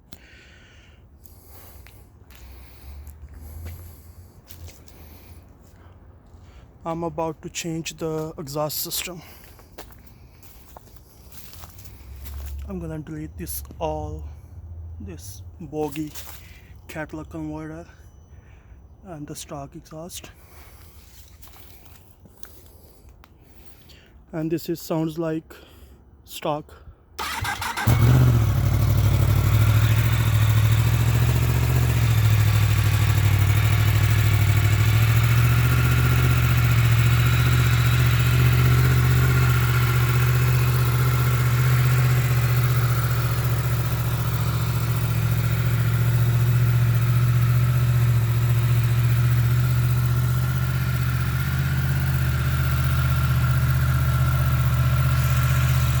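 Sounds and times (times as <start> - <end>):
motorcycle engine idling: 27.2 - 56.0.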